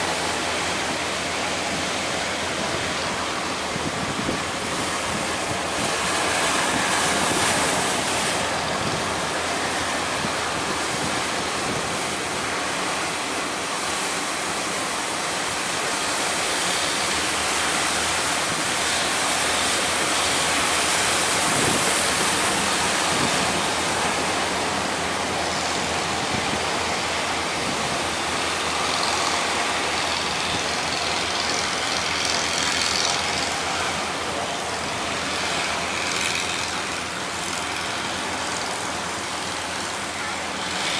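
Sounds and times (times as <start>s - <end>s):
heavy surf breaking: 0.0s - 40.9s
wind buffeting microphone: 0.2s - 13.2s, 18.0s - 33.1s.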